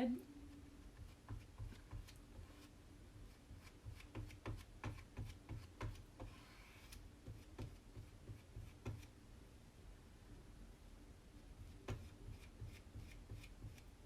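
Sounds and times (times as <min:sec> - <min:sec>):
squeegee scrape: 0:06.2 - 0:07.0.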